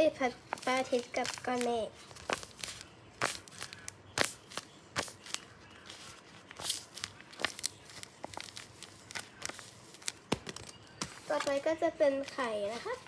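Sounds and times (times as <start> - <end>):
paper crinkling and crackling: 0.1 - 13.0.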